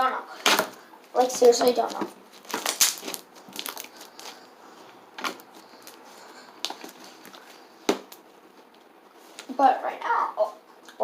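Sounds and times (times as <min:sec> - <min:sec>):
slime squishing and crackling: 0:00.4 - 0:04.6
sharp slime pops: 0:02.5 - 0:03.8.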